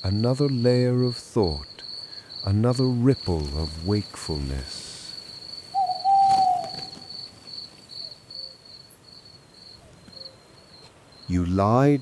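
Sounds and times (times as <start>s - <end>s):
crickets chirping: 0.0s - 12.0s
owl hoot: 5.7s - 7.2s.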